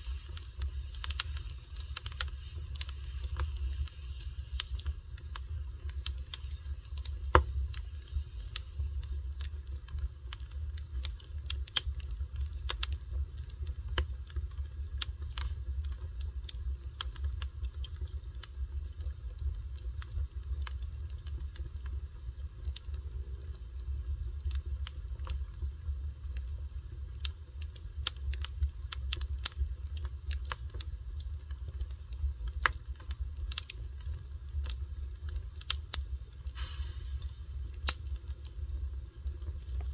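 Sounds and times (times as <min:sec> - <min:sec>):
wood fire crackling: 0:00.0 - 0:39.9
low rumble: 0:36.3 - 0:39.9.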